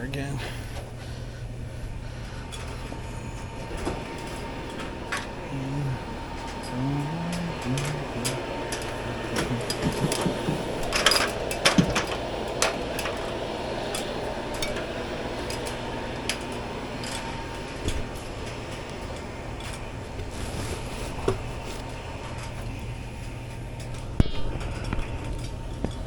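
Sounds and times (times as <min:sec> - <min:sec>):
steady hum: 0:00.0 - 0:26.0
knocks clicks and rustling: 0:06.4 - 0:19.8.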